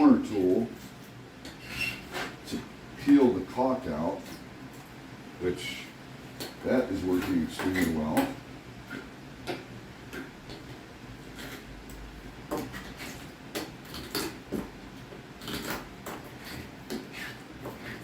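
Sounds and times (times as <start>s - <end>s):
tool scraping caulk: 15.4s - 18.0s.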